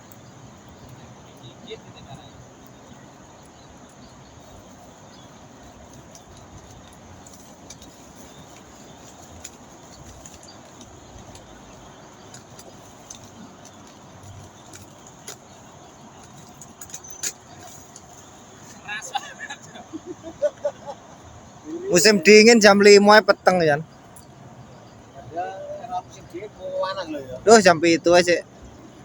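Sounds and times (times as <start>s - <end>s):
small clicks and ticks: 0.0s - 18.8s
background hiss: 0.0s - 29.0s.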